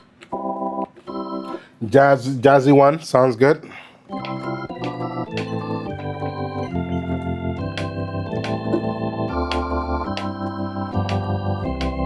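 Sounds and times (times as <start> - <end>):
synthesizer organ chords: 0.3 - 1.7, 4.1 - 12.0
sharp clicks: 4.1 - 5.8
bass line: 4.2 - 12.0.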